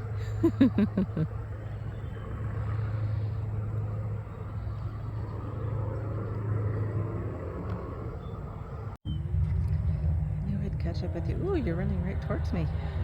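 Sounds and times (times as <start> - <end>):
constant low hum: 0.0 - 13.0
low rumble: 0.0 - 13.0.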